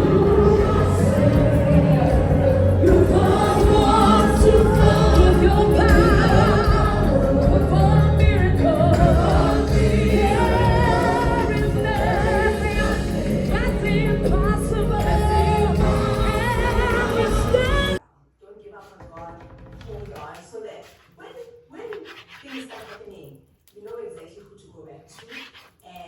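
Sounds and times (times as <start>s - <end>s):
gospel choir singing: 0.0s - 18.0s
heavy bass accompaniment: 0.0s - 18.0s.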